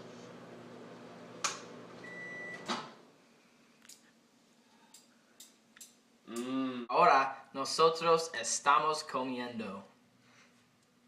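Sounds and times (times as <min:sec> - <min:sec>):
microwave oven humming: 0:00.0 - 0:03.2
microwave beep: 0:02.0 - 0:02.7.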